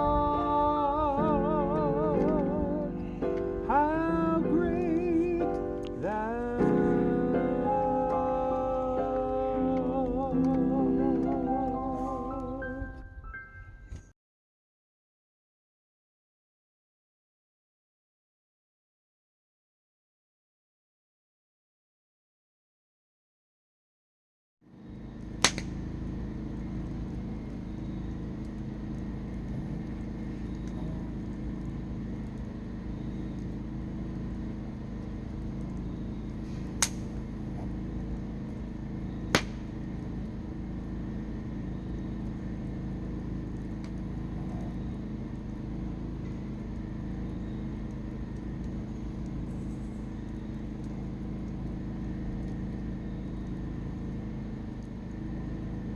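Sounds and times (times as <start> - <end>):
vehicle engine and road rumble: 0.0 - 13.2, 24.7 - 55.9
sharp clicks: 0.6 - 6.8, 25.2 - 25.8, 26.8 - 32.5, 36.8 - 37.2, 39.3 - 39.7.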